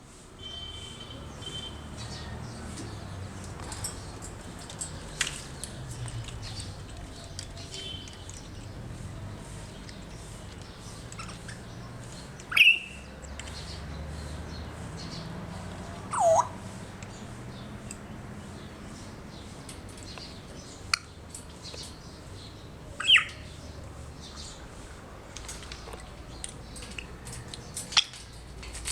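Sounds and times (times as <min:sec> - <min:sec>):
parrots chirping and clicking: 0:01.5 - 0:23.6, 0:24.3 - 0:28.9
parrot whistles: 0:16.1 - 0:16.6.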